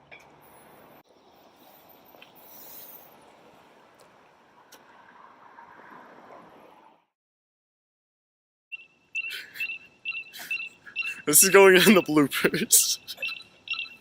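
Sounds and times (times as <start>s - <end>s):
high chirping tone: 8.7s - 14.0s.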